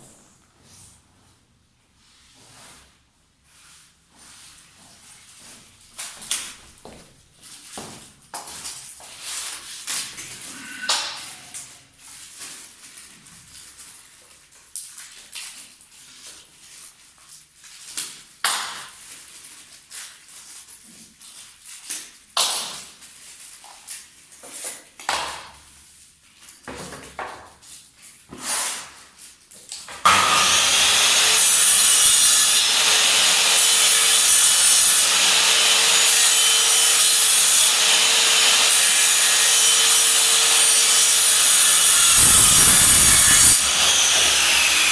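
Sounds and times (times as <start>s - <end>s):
mitre saw running: 30.1s - 44.9s.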